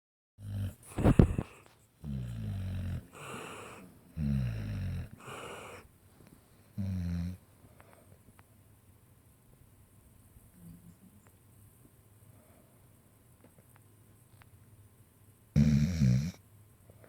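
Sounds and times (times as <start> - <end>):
person snoring: 0.4 - 5.8, 15.6 - 16.4
breathy out-breath: 0.9 - 1.7, 3.1 - 3.9, 5.2 - 5.9.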